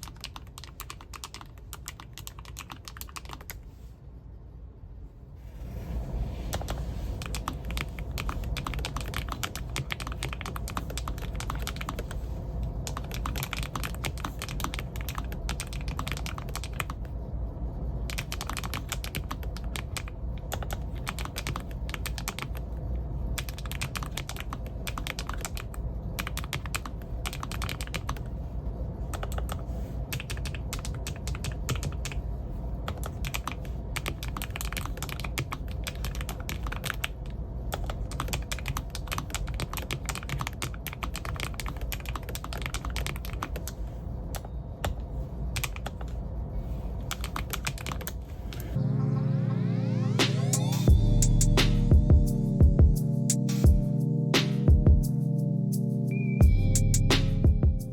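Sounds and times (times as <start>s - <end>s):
typing on mechanical keyboard: 0.0s - 3.6s, 6.5s - 12.2s, 12.8s - 17.2s, 18.0s - 22.8s, 23.4s - 28.3s, 29.1s - 45.0s, 45.6s - 46.2s, 47.1s - 48.8s.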